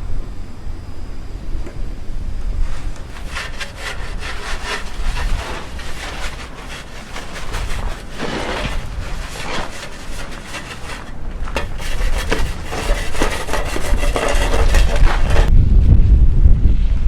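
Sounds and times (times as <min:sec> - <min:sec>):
footsteps crunching through snow: 0:02.6 - 0:15.5
wind rumble on microphone: 0:11.2 - 0:17.0.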